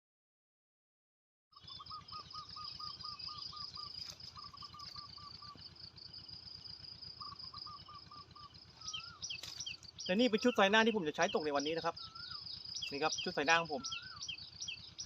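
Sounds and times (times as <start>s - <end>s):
bird repeating call note: 1.6s - 5.7s, 7.1s - 15.0s
high insect trill: 2.9s - 13.7s.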